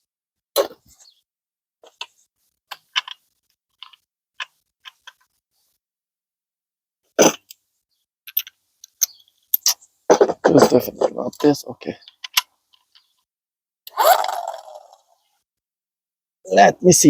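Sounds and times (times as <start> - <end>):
tool parts clicking and tapping: 1.8 - 5.3, 8.3 - 13.2.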